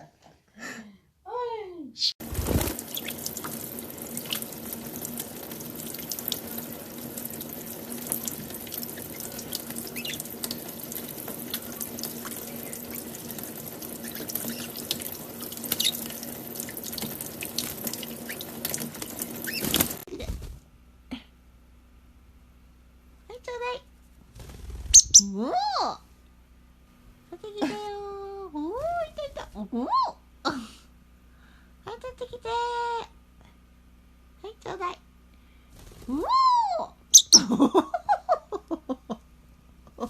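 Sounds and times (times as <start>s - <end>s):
small sharp splashes: 2.2s - 20.1s
water running: 2.2s - 20.1s.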